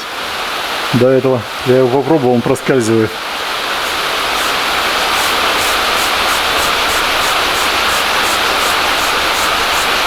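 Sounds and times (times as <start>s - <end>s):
heavy rain hissing: 0.0s - 10.0s
faint high ticking: 3.8s - 10.0s.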